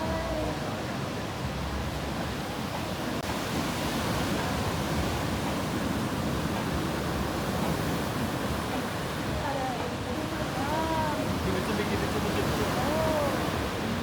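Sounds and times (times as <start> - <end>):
ocean surf breaking: 0.0 - 14.0.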